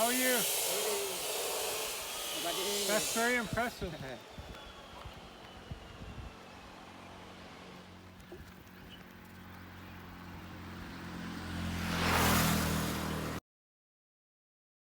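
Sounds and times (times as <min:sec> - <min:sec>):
tyre and rush noise: 0:00.0 - 0:10.8
vehicle engine hum: 0:00.0 - 0:13.4.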